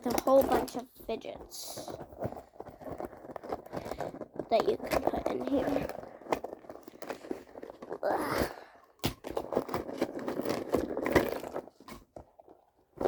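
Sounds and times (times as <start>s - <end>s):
plastic toys clicking and knocking: 0.0s - 13.0s
rustling scrape: 9.2s - 13.0s.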